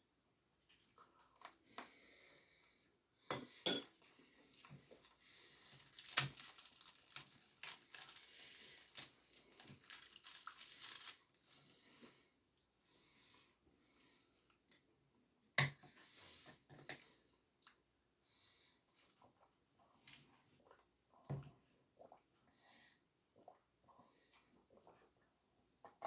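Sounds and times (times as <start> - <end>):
crinkling and rustling: 4.5 - 11.8.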